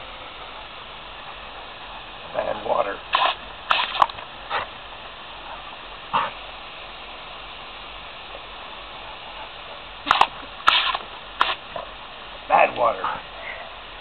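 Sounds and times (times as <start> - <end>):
garden hose spraying water: 0.0 - 14.0
sharp clicks or splashes: 3.1 - 4.2, 10.0 - 11.6.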